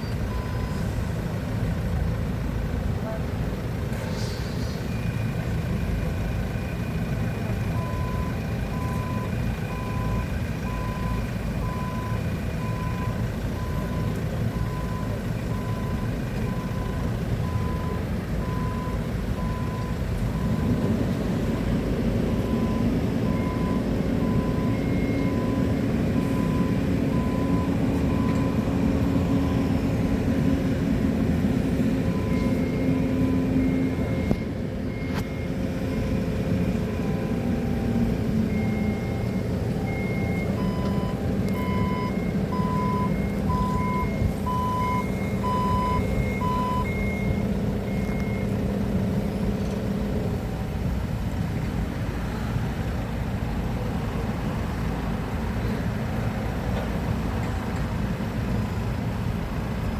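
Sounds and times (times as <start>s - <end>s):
reversing alarm beeping: 0.0s - 0.9s, 7.6s - 20.9s, 21.5s - 30.8s, 31.6s - 48.7s
diesel engine running: 0.0s - 59.9s.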